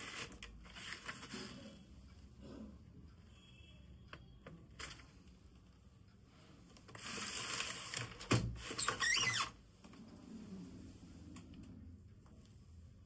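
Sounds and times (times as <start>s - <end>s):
typewriter carriage rasping slide: 6.9s - 9.5s.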